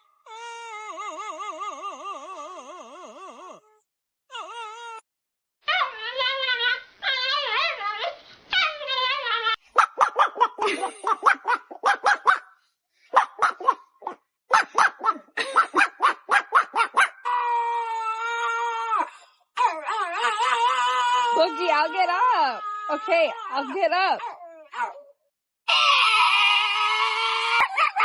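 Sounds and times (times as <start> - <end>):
dog yelping barks: 9.7 - 17.3, 23.9 - 25.1
dog howling: 25.7 - 28.0.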